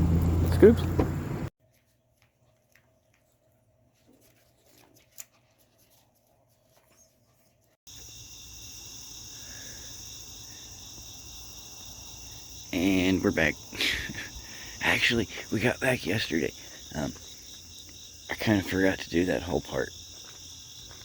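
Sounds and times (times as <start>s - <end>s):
insects chorus: 7.9s - 21.0s.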